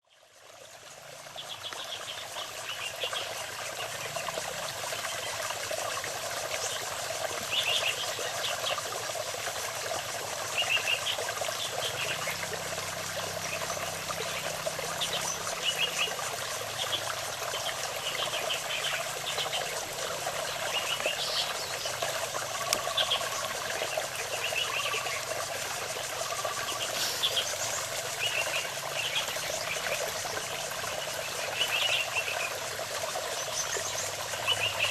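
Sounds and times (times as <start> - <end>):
chorus of calling frogs: 0.2 - 34.9
songbirds chirping: 13.4 - 32.4.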